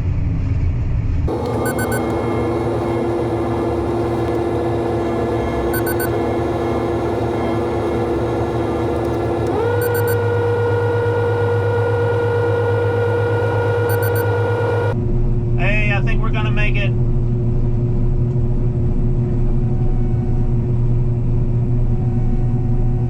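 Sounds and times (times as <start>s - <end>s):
combine harvester humming: 1.3s - 15.0s.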